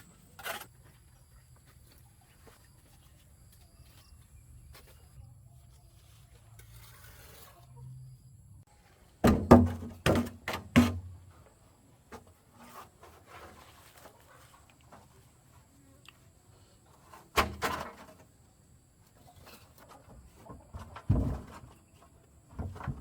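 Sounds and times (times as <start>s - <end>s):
hard knocks on timber: 9.2s - 11.2s
faint rustling and handling: 11.3s - 17.3s.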